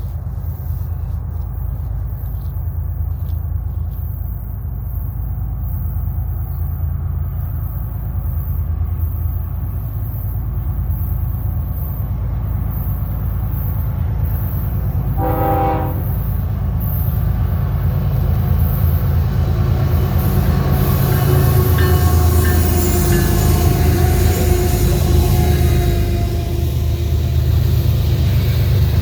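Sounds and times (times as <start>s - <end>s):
diesel locomotive engine rumble: 0.0s - 29.0s
wheel-on-rail noise: 0.0s - 29.0s
train horn blast: 15.0s - 16.3s.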